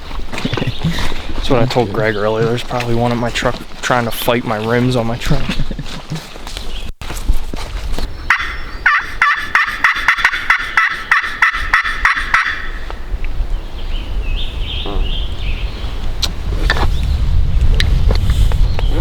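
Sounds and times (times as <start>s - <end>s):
wind rumble on microphone: 0.0s - 8.9s, 12.3s - 19.0s
turkey call yelps: 8.3s - 12.9s.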